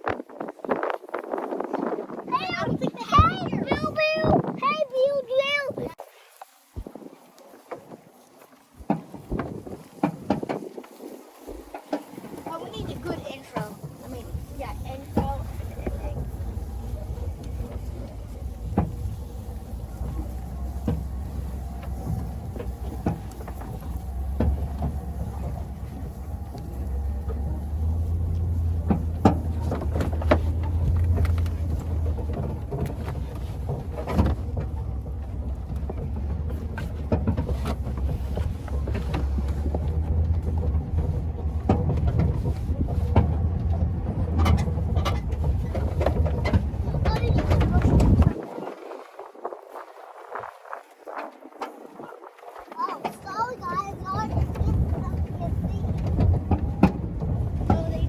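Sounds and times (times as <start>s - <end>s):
truck engine rumble: 2.3s - 6.0s, 8.2s - 48.6s, 52.7s - 58.0s
knocks and rattles: 8.9s - 48.4s, 53.0s - 58.0s.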